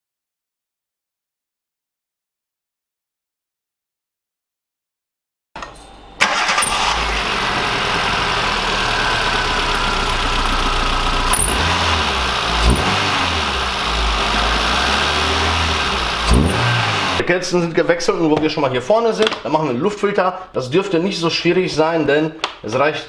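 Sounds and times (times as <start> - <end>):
car engine starting and idling: 6.2 - 17.3.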